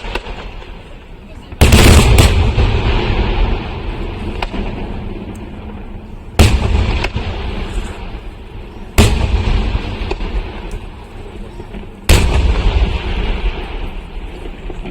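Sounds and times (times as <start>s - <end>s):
firework shells booming: 0.0s - 14.9s
sharp firework cracks: 0.0s - 14.9s.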